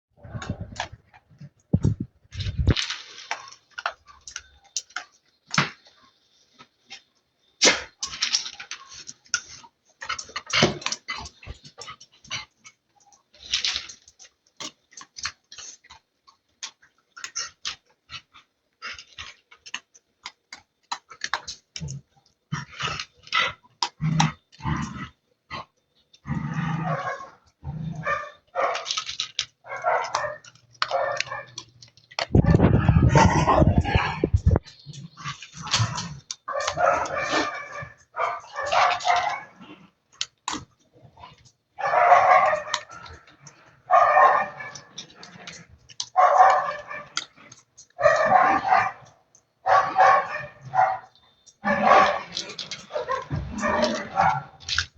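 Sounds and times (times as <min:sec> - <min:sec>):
dog chewing: 0:00.2 - 0:54.9
dog grumbling and whining: 0:22.6 - 0:28.9, 0:32.2 - 0:39.8, 0:41.1 - 0:49.1, 0:49.7 - 0:54.9
dog barking: 0:28.0 - 0:28.9, 0:29.7 - 0:31.6, 0:36.5 - 0:39.6, 0:41.8 - 0:43.1, 0:43.9 - 0:44.9, 0:46.1 - 0:47.2, 0:48.0 - 0:52.3, 0:52.9 - 0:54.6.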